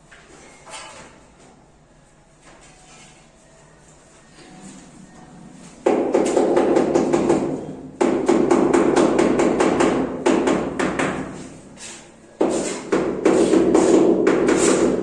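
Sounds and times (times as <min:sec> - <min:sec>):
rapid hammering: 0:05.8 - 0:11.4, 0:12.4 - 0:15.0.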